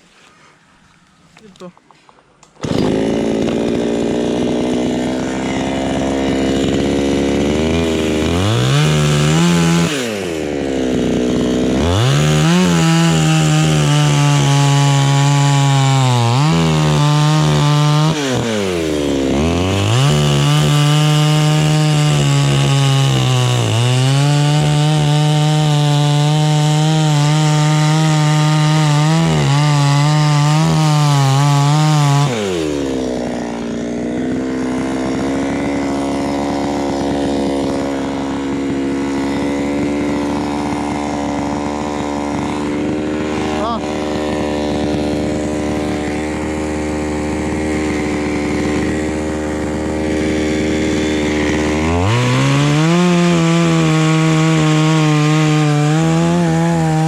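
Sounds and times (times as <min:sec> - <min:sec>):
chainsaw cutting wood: 0:01.0 - 0:57.0.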